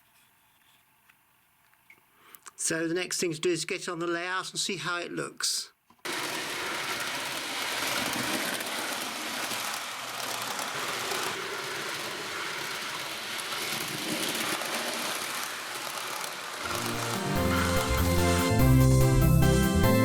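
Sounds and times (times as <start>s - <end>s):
train running: 6.1s - 20.0s.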